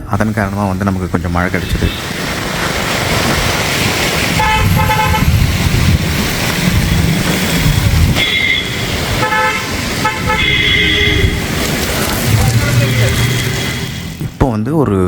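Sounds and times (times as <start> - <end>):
traffic noise: 0.0 - 14.6
vehicle horns honking: 1.4 - 2.3, 4.3 - 5.4, 8.0 - 14.2.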